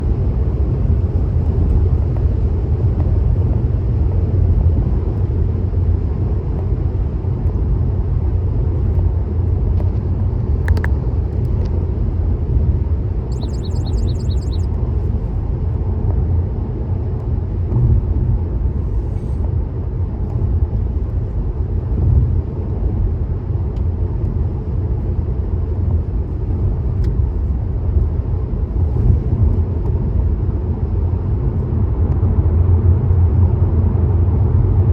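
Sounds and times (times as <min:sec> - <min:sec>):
tyre and road noise: 0:08.3 - 0:34.9.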